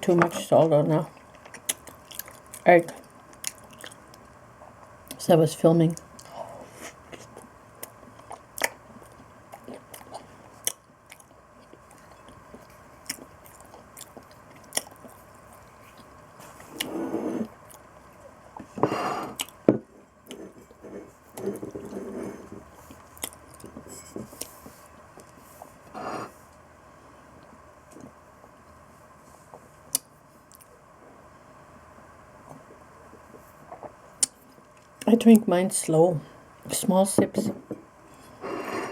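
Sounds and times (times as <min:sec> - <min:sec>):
person chewing food: 0:01.1 - 0:05.2, 0:06.2 - 0:17.9, 0:18.5 - 0:25.9.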